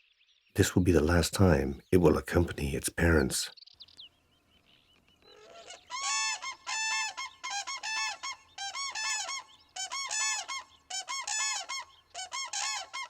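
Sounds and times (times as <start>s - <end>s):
cranes trumpeting calls: 5.3s - 13.0s.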